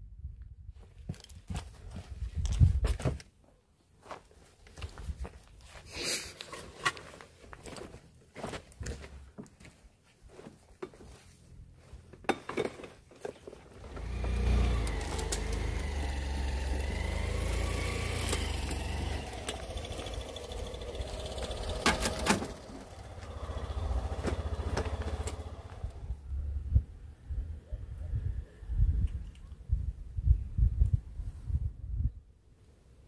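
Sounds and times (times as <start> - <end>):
vehicle engine rumble: 13.6 - 29.5.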